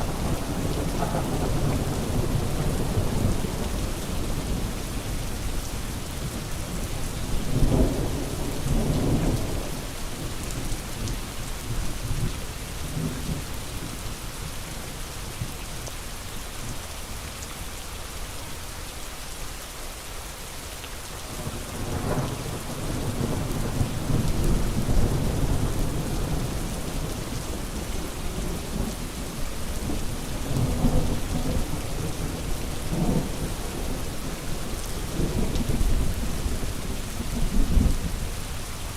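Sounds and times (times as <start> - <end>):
rolling thunder: 0.0 - 5.5
heavy rain: 0.0 - 38.9.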